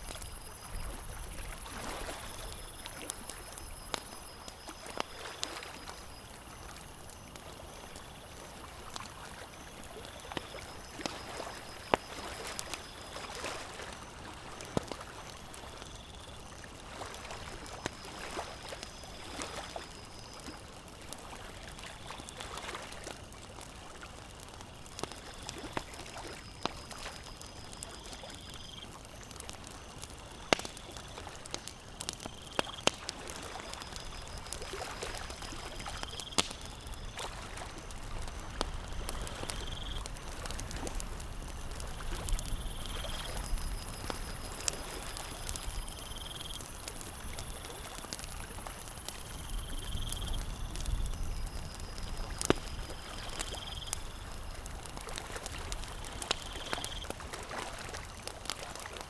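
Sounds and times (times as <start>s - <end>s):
campfire crackling and popping: 0.0s - 59.0s
lake water lapping at shore: 1.4s - 3.6s, 32.6s - 39.6s, 51.9s - 59.0s.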